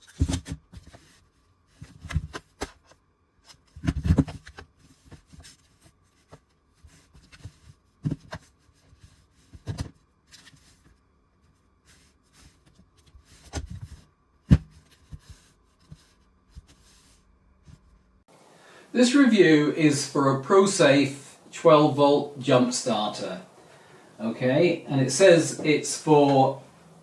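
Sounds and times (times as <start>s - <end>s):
handling knocks and rustles: 0.0s - 18.0s
faint steady hum: 0.0s - 27.0s.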